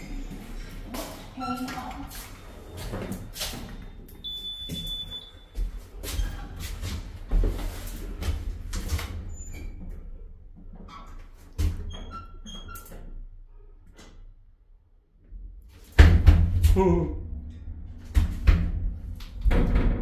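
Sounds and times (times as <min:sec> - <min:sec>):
high electronic beep: 0:04.2 - 0:05.4
heavy low rumble: 0:16.0 - 0:20.0
lift clunking and knocking: 0:17.2 - 0:20.0.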